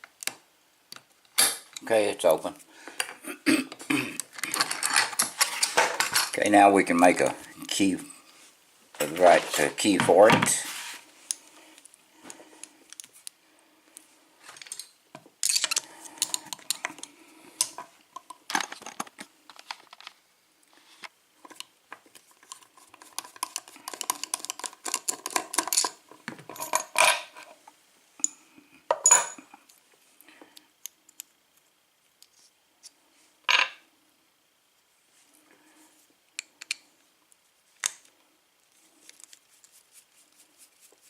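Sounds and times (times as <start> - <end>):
padlock parts clicking and rattling: 4.3 - 6.4, 14.6 - 16.8, 22.4 - 27.2.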